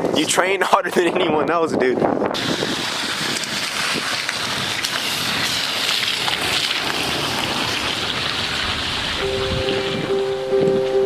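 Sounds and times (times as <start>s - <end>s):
steady rushing noise: 2.3s - 11.0s
held musical notes: 9.2s - 11.0s.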